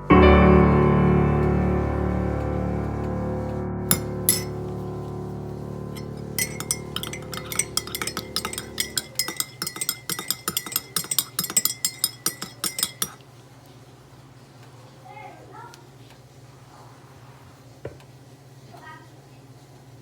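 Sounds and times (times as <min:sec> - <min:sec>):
background music: 0:00.0 - 0:08.8
spoon clinking against cup: 0:03.9 - 0:04.6, 0:06.0 - 0:13.2.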